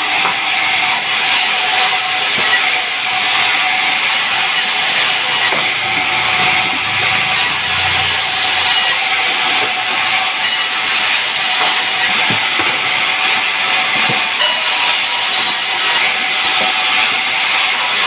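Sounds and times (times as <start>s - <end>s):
sawmill saw cutting timber: 0.0s - 18.0s.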